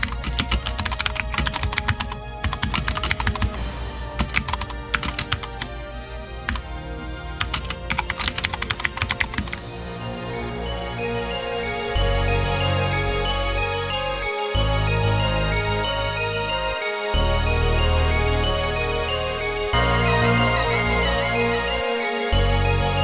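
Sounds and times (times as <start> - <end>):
mechanical keyboard typing: 0.0 - 3.6, 4.2 - 5.8, 6.5 - 6.7, 7.4 - 9.6
background music: 0.0 - 23.0.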